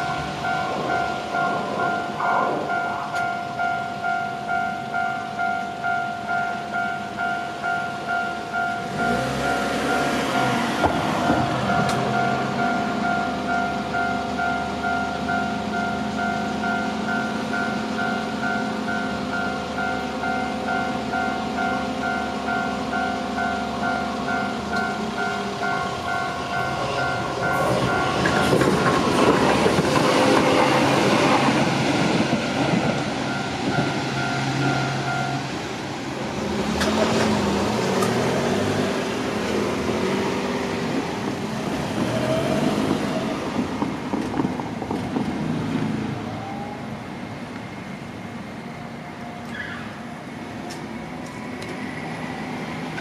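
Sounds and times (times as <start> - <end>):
level-crossing bell ringing: 0.0 - 10.6, 11.3 - 28.6, 33.2 - 35.5
electric train rumbling: 0.0 - 53.0
traffic noise: 0.0 - 53.0.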